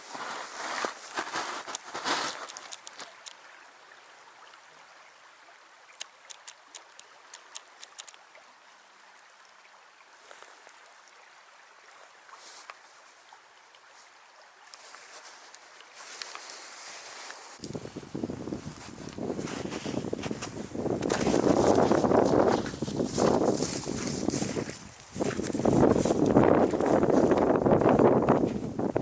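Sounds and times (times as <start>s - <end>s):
creek water running: 0.0s - 29.0s
light clicks: 5.9s - 8.2s.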